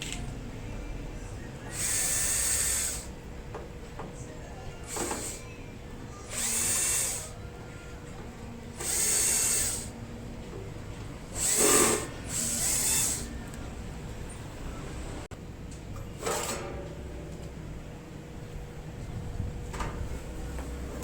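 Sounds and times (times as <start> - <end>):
power drill whirring: 1.7 - 3.2, 4.9 - 5.5, 6.2 - 7.4, 8.7 - 9.9, 11.3 - 13.4.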